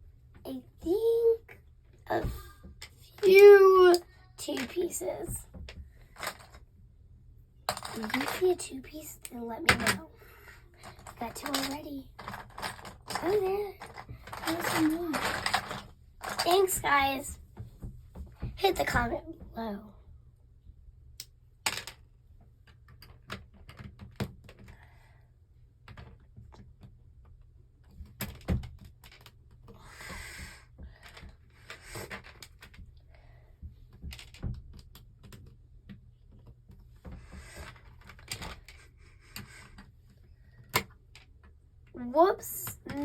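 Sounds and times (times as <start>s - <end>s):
plastic bricks clicking and clattering: 2.8s - 5.4s, 6.1s - 6.6s, 7.7s - 10.1s, 10.8s - 17.0s, 21.6s - 24.7s, 37.4s - 39.9s
loose pieces rustling: 7.7s - 8.7s, 10.8s - 17.0s.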